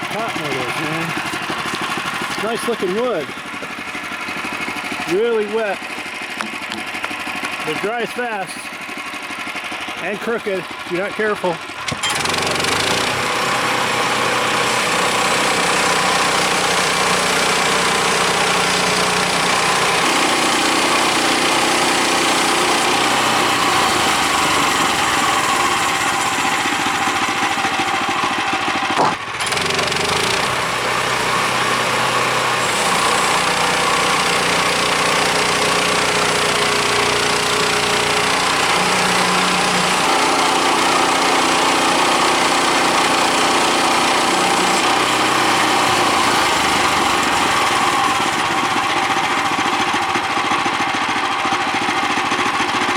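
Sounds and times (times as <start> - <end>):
gas engine running: 0.0 - 52.9
saw blade cutting log: 0.0 - 52.9
sharp knock: 28.9 - 29.2.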